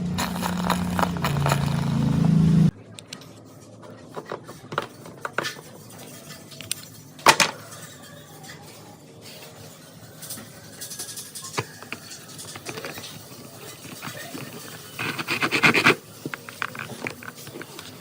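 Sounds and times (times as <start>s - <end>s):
metal parts clinking: 0.2s - 2.4s.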